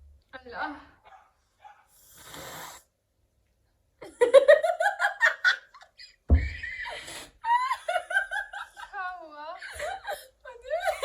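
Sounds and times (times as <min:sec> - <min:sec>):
woman sniffing: 0:02.0 - 0:03.0
woman laughing: 0:04.0 - 0:11.0.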